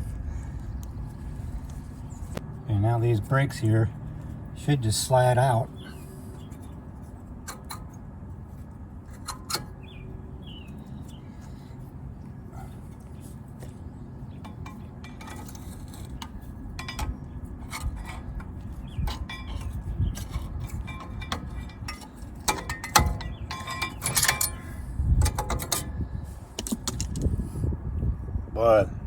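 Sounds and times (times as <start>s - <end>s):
metallic clinks and scrapes: 14.5s - 25.9s.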